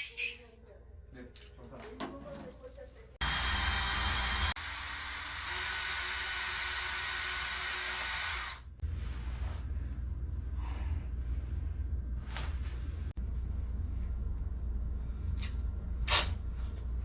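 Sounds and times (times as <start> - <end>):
electric drill running: 3.2 - 8.8
low rumble: 8.8 - 17.0.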